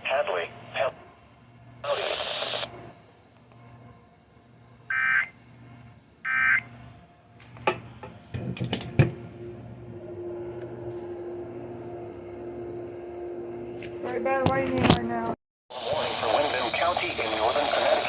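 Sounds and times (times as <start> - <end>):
steady low hum: 0.0 - 18.0
static crackles and clicks: 1.8 - 2.7, 15.7 - 18.0.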